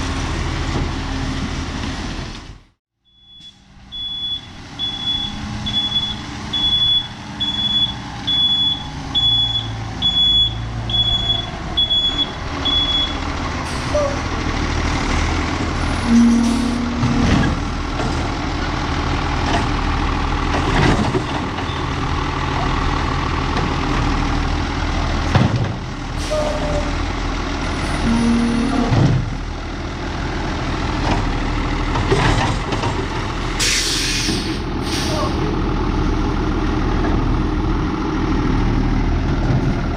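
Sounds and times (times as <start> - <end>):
reversing alarm beeping: 3.1 - 13.2, 16.0 - 17.1
truck engine running: 3.6 - 33.6, 34.3 - 39.9.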